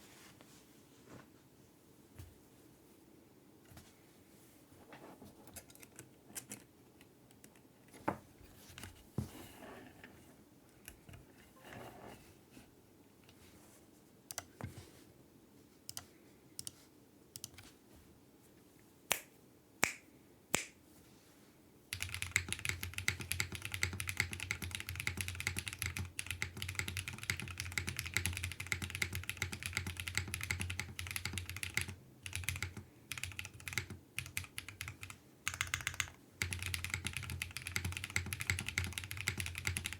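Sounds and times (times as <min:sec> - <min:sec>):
mechanical keyboard typing: 0:17.4 - 0:17.6, 0:21.9 - 0:39.9.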